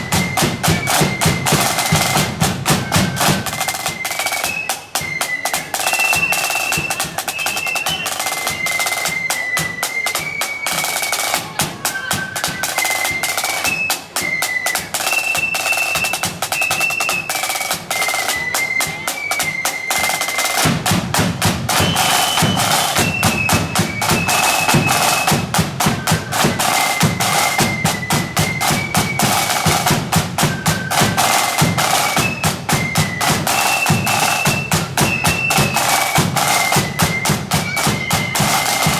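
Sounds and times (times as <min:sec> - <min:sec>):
flutes playing a tune: 0:00.0 - 0:38.9
rapid snare drumming: 0:00.0 - 0:38.9.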